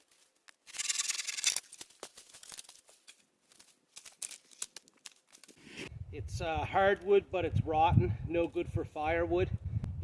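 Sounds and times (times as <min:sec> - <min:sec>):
twigs crackling and snapping: 0:00.0 - 0:05.6.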